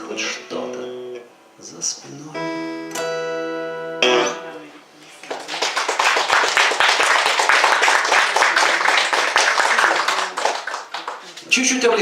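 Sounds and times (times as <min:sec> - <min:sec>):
audience applauding: 0:05.1 - 0:11.6.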